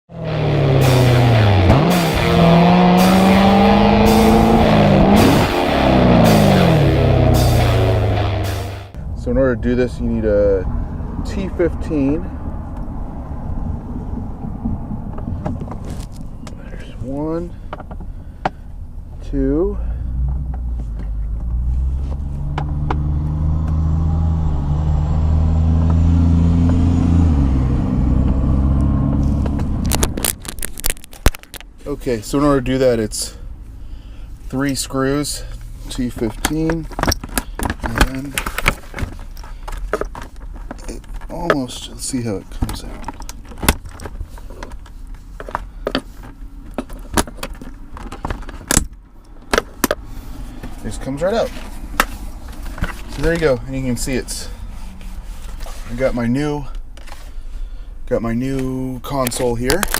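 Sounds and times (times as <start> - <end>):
vehicle engine rumbling: 0.1 - 59.9.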